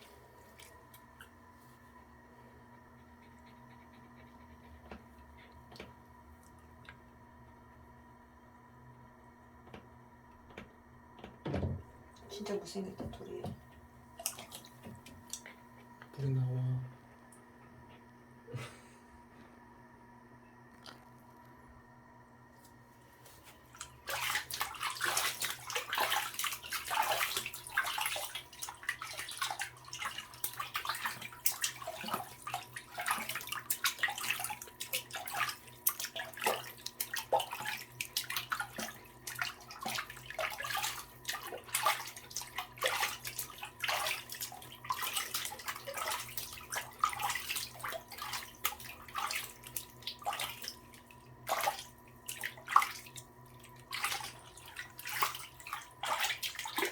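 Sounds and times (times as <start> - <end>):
water splashing into bathtub: 11.3 - 16.8, 22.6 - 56.9.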